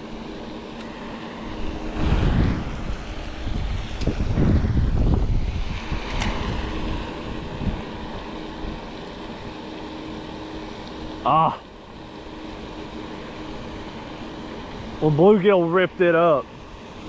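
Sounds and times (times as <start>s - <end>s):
faint steady hum: 0.0s - 17.0s
wind buffeting microphone: 1.4s - 9.6s.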